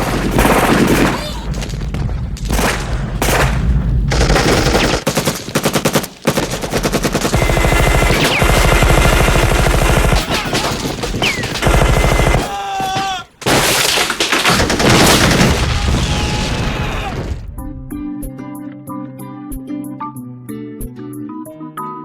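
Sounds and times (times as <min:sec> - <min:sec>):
machine-gun fire sound effect: 0:02.5 - 0:12.5
music with a steady beat: 0:17.6 - 0:21.6.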